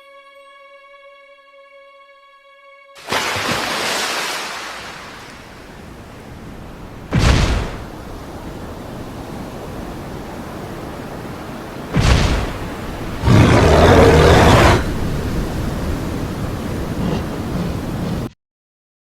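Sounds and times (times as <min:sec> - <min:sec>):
loud crash: 0:07.1 - 0:07.9, 0:12.0 - 0:12.6
monster roar: 0:13.2 - 0:15.0.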